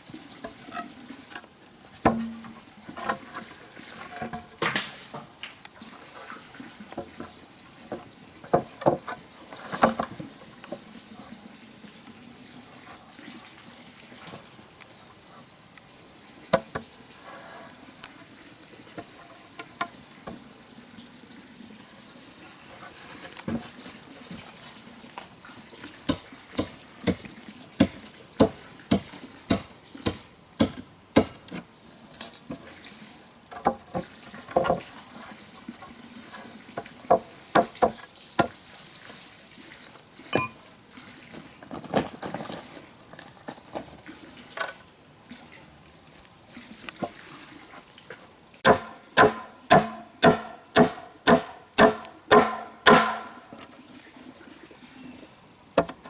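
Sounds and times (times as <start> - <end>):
faint steady hiss: 0.0 - 56.0
sharp knocks: 27.8 - 31.6, 48.6 - 53.4.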